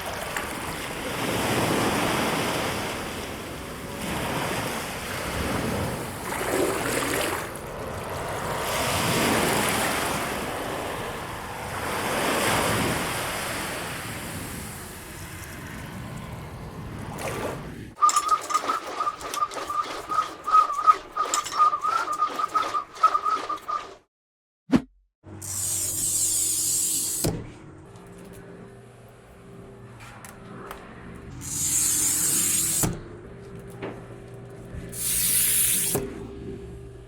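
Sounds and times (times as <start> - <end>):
wavering whistling tone: 18.0 - 24.0.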